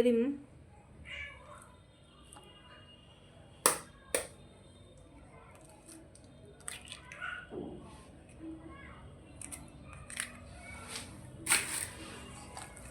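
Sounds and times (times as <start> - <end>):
sharp taps: 3.7 - 4.3.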